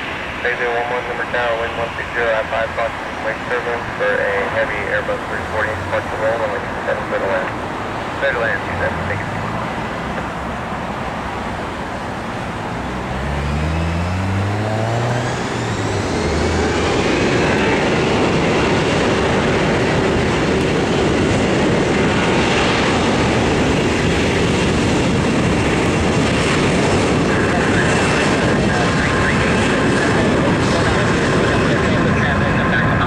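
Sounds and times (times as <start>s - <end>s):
jet engines spooling up: 12.0s - 33.0s.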